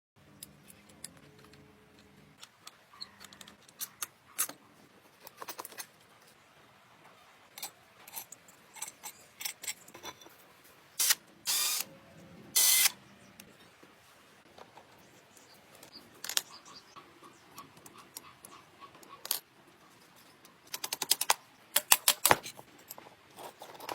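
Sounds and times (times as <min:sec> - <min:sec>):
hand tools clicking and scraping: 0:07.6 - 0:11.9, 0:12.6 - 0:12.9, 0:20.1 - 0:23.9.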